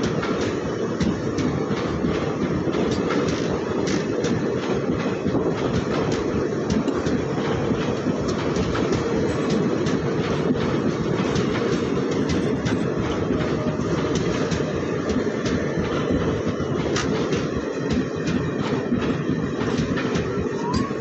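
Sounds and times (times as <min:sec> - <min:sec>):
train coaches rumbling past: 0:00.0 - 0:21.0
wheels clacking over rail joints: 0:00.0 - 0:21.0.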